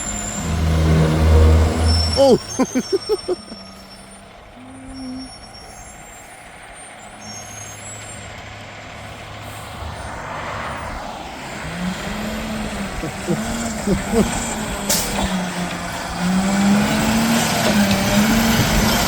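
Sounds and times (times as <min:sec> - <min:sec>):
passing vehicle road noise: 0:00.0 - 0:02.2, 0:07.5 - 0:19.0.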